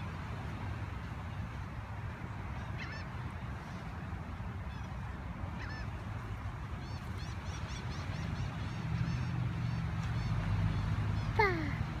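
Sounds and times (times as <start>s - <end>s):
flock of birds calling: 2.6s - 3.2s, 5.6s - 6.0s.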